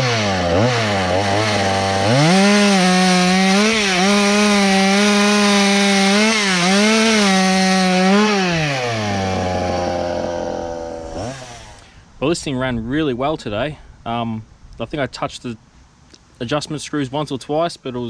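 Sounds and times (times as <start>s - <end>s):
chainsaw cutting wood: 0.0s - 11.9s
chainsaw idling: 0.0s - 12.0s.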